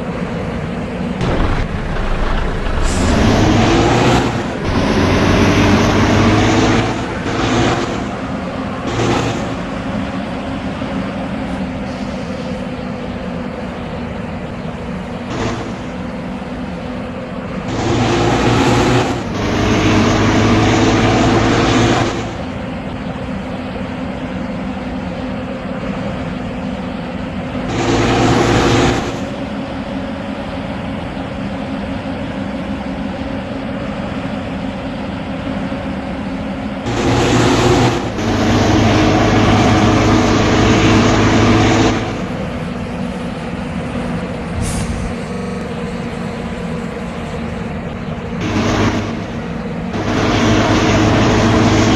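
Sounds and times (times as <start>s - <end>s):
diesel bus engine idling: 1.2s - 8.9s
bus engine revving: 1.2s - 10.4s, 17.5s - 22.8s, 36.9s - 51.9s.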